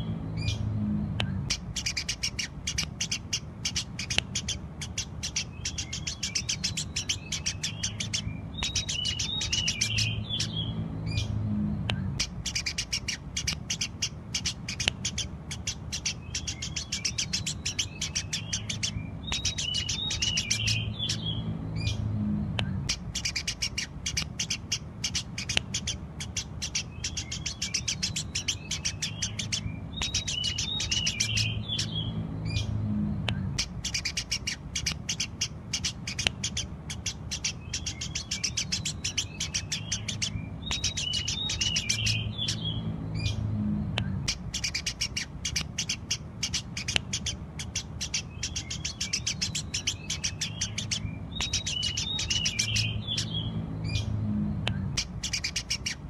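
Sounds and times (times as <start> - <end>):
low hum: 0.0 - 2.6, 5.5 - 14.3, 17.5 - 25.0, 28.0 - 35.7, 39.2 - 45.0, 52.6 - 55.6
sparrows chirping rapidly: 0.0 - 56.0.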